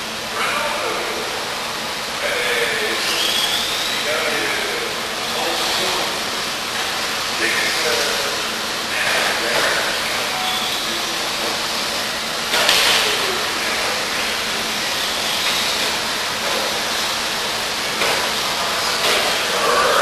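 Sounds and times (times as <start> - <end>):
radio-controlled cars racing: 2.2 - 11.6, 17.8 - 20.0.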